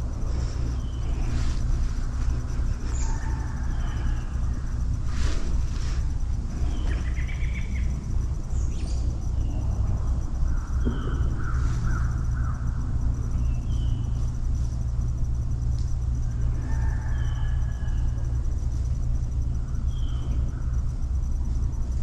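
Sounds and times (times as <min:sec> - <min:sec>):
steady low rumble: 0:00.0 - 0:22.0
warbling bird call: 0:00.3 - 0:09.6.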